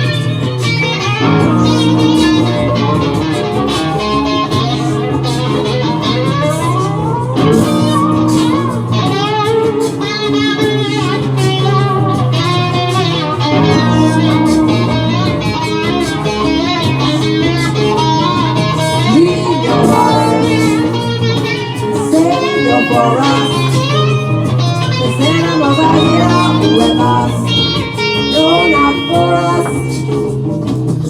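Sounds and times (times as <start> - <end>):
low bass pattern: 0.0 - 10.0, 10.6 - 31.0
electric guitar bending lines: 0.0 - 31.0.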